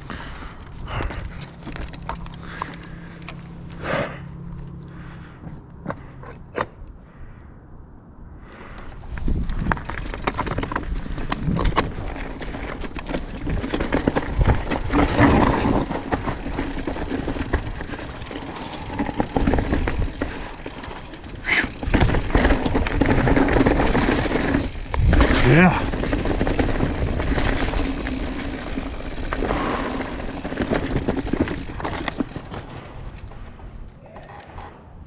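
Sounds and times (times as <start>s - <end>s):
bike chain and frame rattling: 9.4s - 33.8s
bike tyres clattering over rocks: 9.4s - 34.6s.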